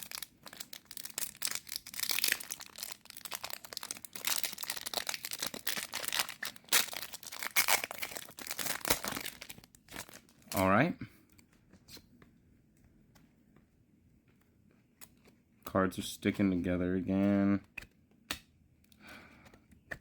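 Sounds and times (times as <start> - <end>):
foil pack tearing and crinkling: 0.0 - 10.4.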